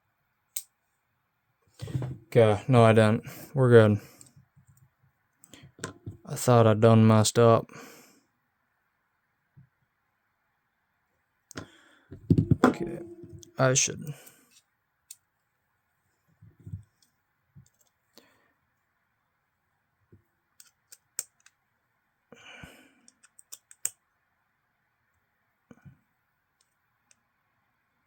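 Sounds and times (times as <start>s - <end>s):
soft knocks: 12.2s - 13.4s.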